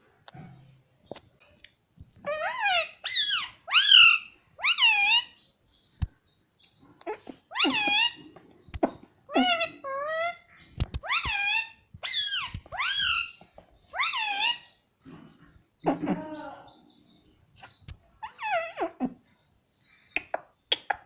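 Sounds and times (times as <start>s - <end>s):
parrot whining calls: 2.2s - 5.4s, 7.0s - 8.3s, 9.3s - 14.8s, 18.2s - 19.2s.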